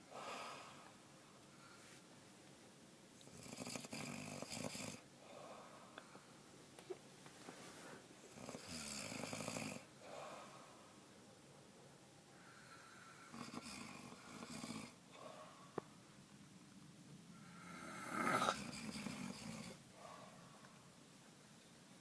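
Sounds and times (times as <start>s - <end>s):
person snoring: 17.4s - 19.8s.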